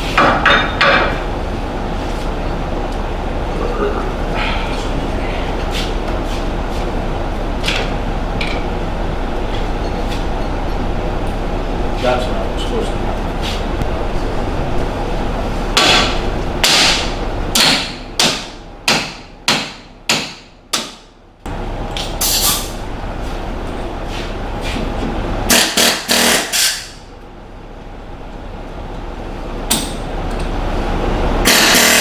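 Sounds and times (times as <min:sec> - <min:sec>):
low hum: 0:01.1 - 0:18.9, 0:21.2 - 0:25.6
hammer striking steel: 0:15.8 - 0:21.1.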